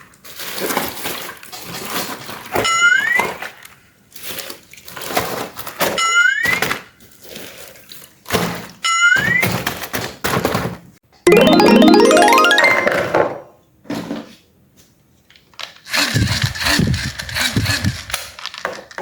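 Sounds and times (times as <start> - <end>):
rising musical jingle: 11.3 - 13.3.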